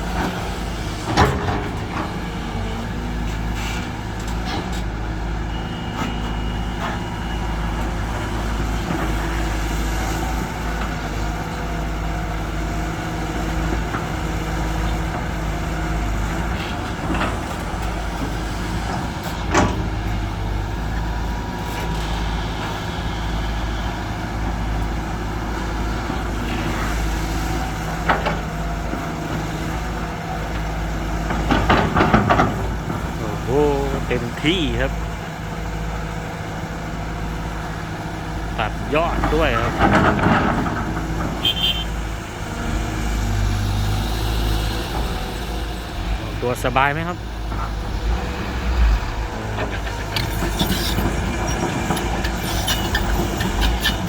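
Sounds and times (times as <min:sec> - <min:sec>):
heavy diesel engines running: 0:00.0 - 0:54.0.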